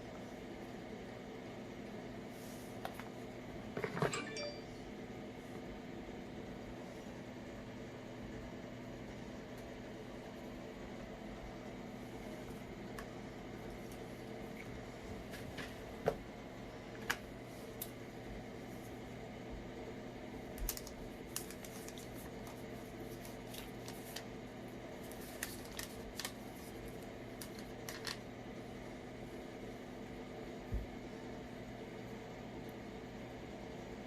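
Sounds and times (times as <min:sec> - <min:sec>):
electrical hum: 0:00.0 - 0:34.0
smartphone and packaging handling: 0:20.6 - 0:24.3, 0:25.0 - 0:28.2.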